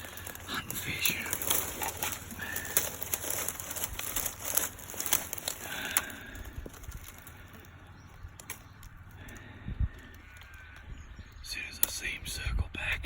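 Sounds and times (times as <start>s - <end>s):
rustling and crackling: 0.0s - 12.1s.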